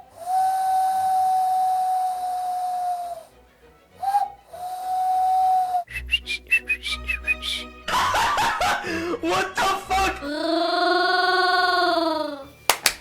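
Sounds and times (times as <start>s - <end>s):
girl making high whistle tone: 0.3s - 3.2s, 10.3s - 12.5s.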